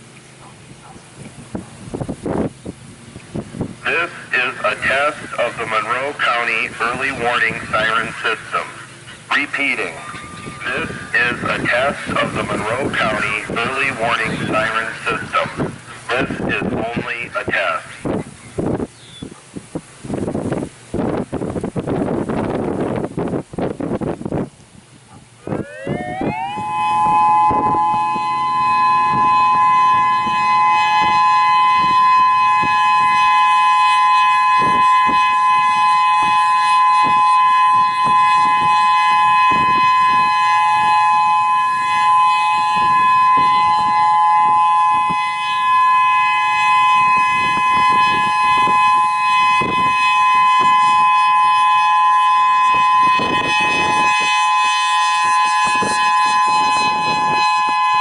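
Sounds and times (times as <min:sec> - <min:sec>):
wind buffeting microphone: 0:00.0 - 0:58.0
warning siren two-note chord: 0:09.8 - 0:15.1, 0:25.4 - 0:58.0.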